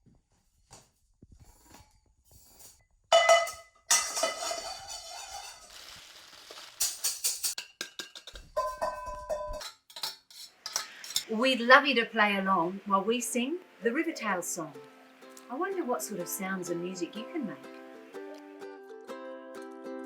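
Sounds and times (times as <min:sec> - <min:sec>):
metal saucepan struck ringing: 0:03.1 - 0:05.6, 0:08.6 - 0:09.7
kitchenware rattling: 0:03.1 - 0:05.8, 0:06.9 - 0:11.3.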